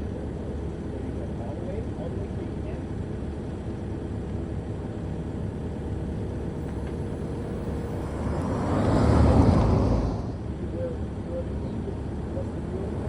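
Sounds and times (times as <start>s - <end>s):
excavator diesel engine running: 2.9s - 12.9s
loud rushing noise: 6.6s - 10.5s.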